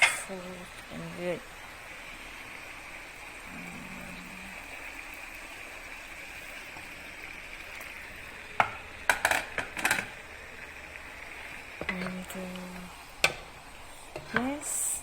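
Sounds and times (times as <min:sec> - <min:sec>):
spoon clinking and scraping pot: 0:00.0 - 0:00.3
hiss of simmering pot: 0:00.0 - 0:15.0.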